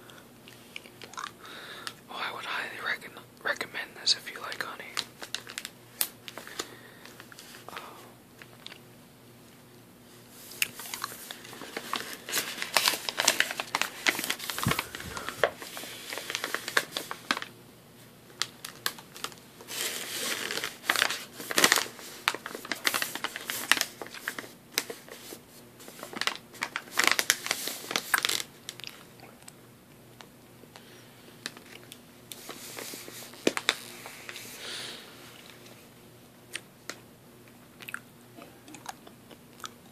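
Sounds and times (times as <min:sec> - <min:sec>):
plastic packaging crinkling: 0:04.0 - 0:08.8, 0:10.5 - 0:17.6, 0:18.3 - 0:29.2, 0:31.4 - 0:34.7.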